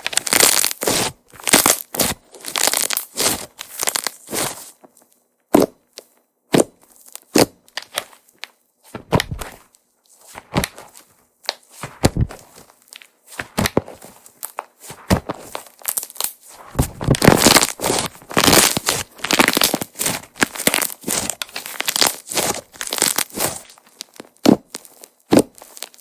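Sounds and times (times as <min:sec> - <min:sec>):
sticky slime pops and crackles: 0:00.0 - 0:04.6, 0:05.5 - 0:09.6, 0:10.3 - 0:26.0.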